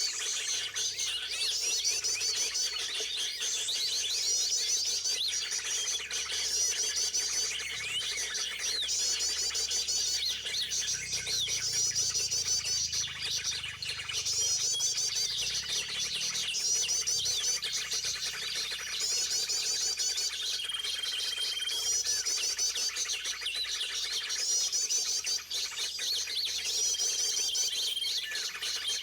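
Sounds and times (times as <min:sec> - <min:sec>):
bird whistles: 0:00.0 - 0:29.0
small birds chirping: 0:00.0 - 0:29.0.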